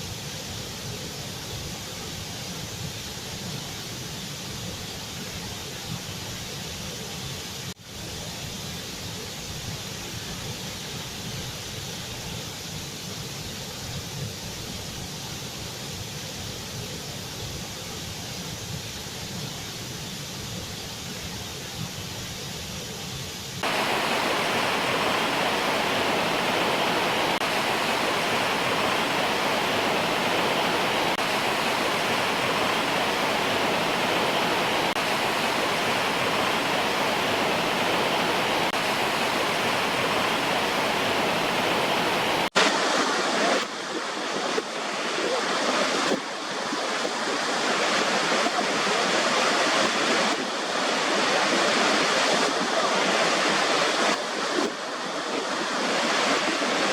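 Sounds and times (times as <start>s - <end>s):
waterfall rushing: 23.6s - 56.9s.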